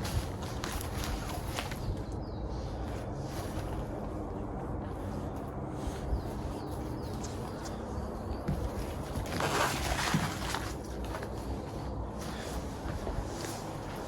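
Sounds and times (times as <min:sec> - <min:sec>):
steady low rumble: 0:00.0 - 0:09.3
footsteps on a trail: 0:00.0 - 0:14.0
scuff or rustle: 0:00.0 - 0:14.0.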